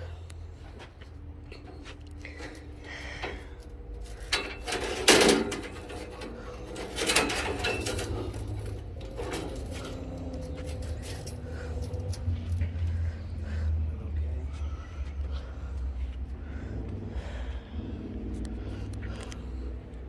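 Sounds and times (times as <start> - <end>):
low steady hum: 0.0 - 20.0
metallic clanks and rattles: 0.7 - 13.8.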